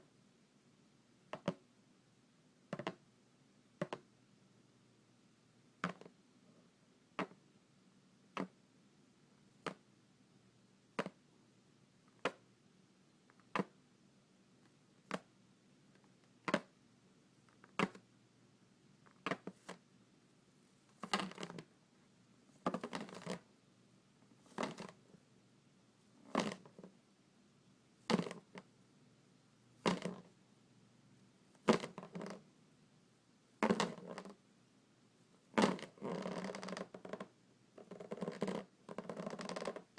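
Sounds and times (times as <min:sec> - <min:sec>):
fingers rubbing a balloon: 0:35.6 - 0:39.9.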